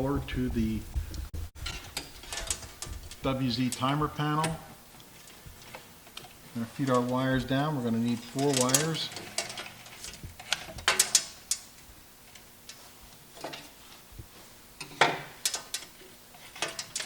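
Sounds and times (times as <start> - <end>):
wire clicking and scraping on panel: 14.8 - 17.0.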